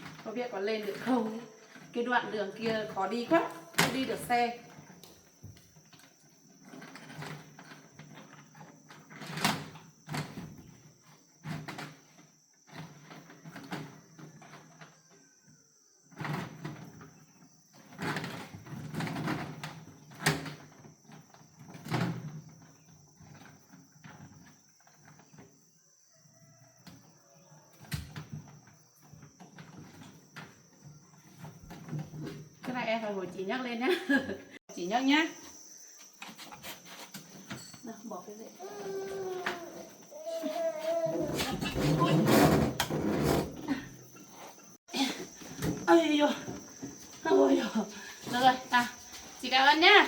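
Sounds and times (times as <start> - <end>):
refrigerator knocking and scraping: 41.1 - 43.6.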